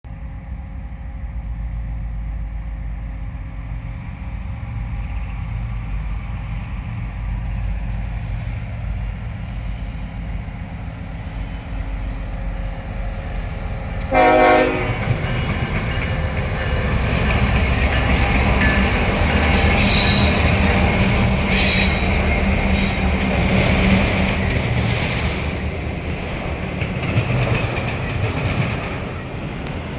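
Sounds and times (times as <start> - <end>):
locomotive engine rumble: 0.1 - 29.9
train wheel clatter: 13.2 - 29.9
locomotive horn blast: 14.0 - 15.1
high-pitched wheel squeal: 19.5 - 23.2.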